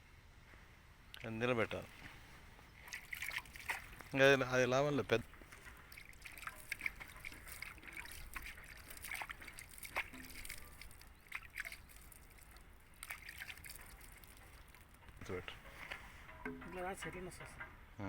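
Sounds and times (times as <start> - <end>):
water trickling and sloshing: 1.2 - 17.5.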